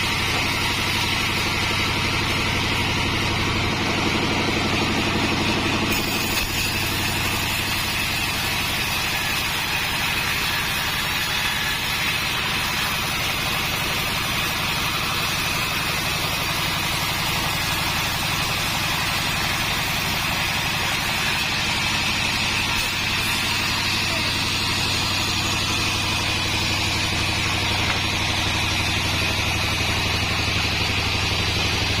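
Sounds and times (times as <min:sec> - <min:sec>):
high machinery whine: 0:00.0 - 0:32.0.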